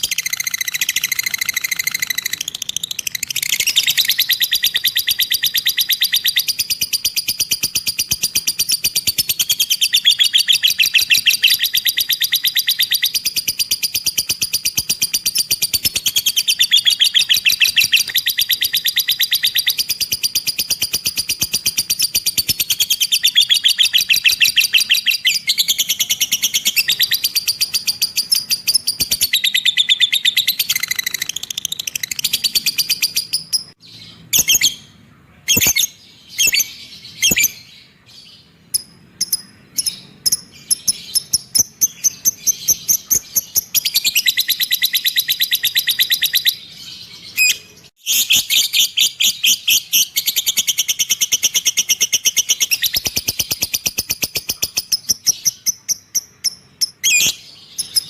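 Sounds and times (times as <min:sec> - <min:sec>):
bird chattering trills: 0:00.0 - 0:35.8.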